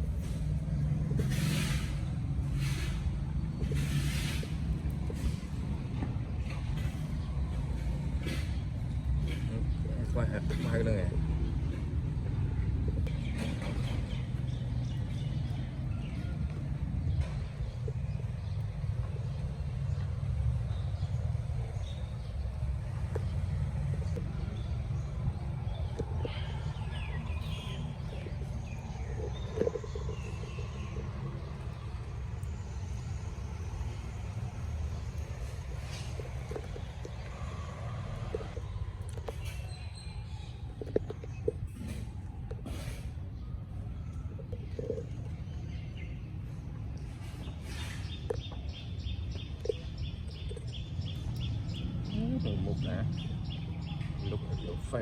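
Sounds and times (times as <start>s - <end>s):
low outdoor rumble: 0.0s - 55.0s
bird chirping: 17.0s - 37.8s, 47.2s - 55.0s.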